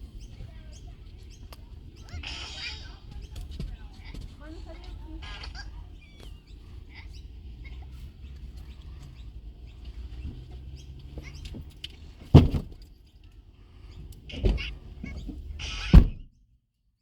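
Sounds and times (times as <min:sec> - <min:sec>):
heavy thump: 0:12.3 - 0:12.8.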